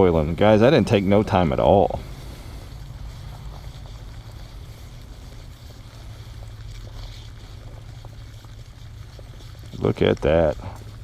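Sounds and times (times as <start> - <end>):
fire crackling: 0.0 - 11.0
kettle boiling rumble: 0.0 - 11.0.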